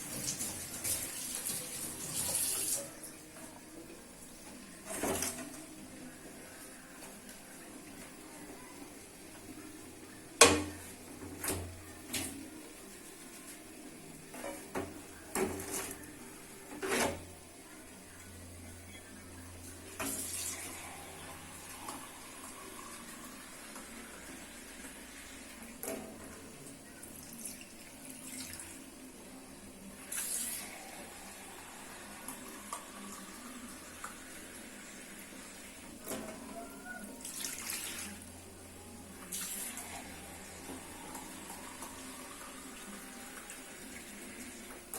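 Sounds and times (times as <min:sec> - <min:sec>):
water running from tap: 0:00.0 - 0:03.2, 0:19.9 - 0:26.0, 0:27.0 - 0:28.8, 0:30.0 - 0:36.2, 0:37.2 - 0:38.3.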